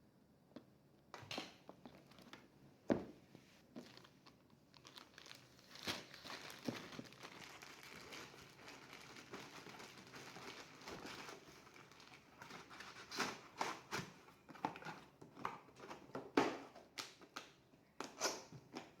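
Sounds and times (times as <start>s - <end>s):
plastic rustling: 3.6s - 16.4s.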